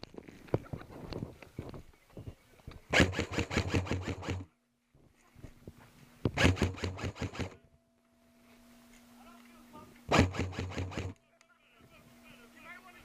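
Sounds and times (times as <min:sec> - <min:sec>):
airsoft gun firing bursts: 0:02.9 - 0:04.5, 0:06.4 - 0:07.6, 0:10.1 - 0:11.2.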